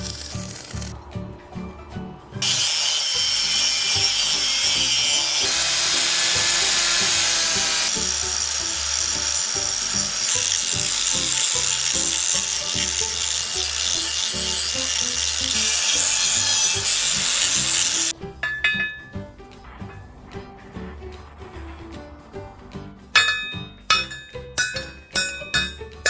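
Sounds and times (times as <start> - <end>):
power tool grinding: 0.0 - 1.0, 2.4 - 18.1
background music: 0.0 - 26.0.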